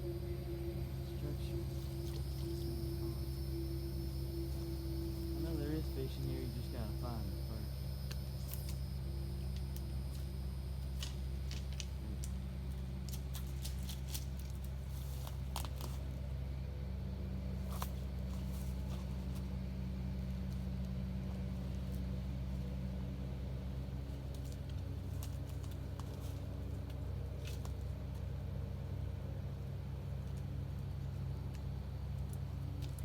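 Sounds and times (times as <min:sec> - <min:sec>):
highway traffic drone: 0:00.0 - 0:33.0
small clicks and crackles: 0:08.1 - 0:12.4, 0:13.0 - 0:16.1, 0:24.2 - 0:28.3, 0:30.2 - 0:33.0.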